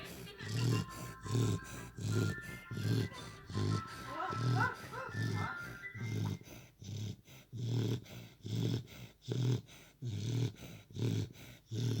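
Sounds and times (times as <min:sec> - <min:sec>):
dog snoring: 0:00.0 - 0:12.0.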